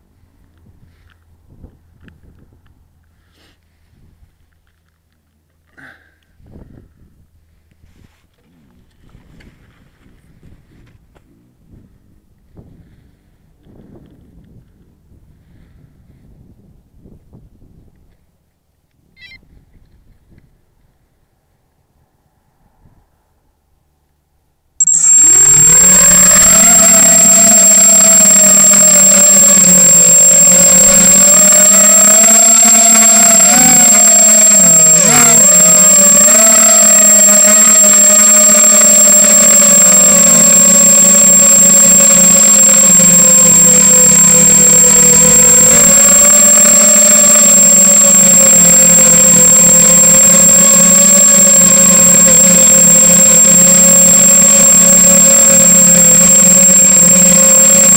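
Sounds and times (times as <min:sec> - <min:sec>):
constant high-pitched tone: 0:24.8 - 0:57.9
quadcopter motors buzzing whine: 0:24.8 - 0:57.9.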